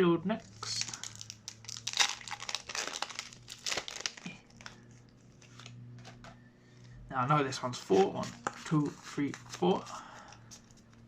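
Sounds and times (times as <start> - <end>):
foil wrapper crinkling and tearing: 0.6 - 5.8.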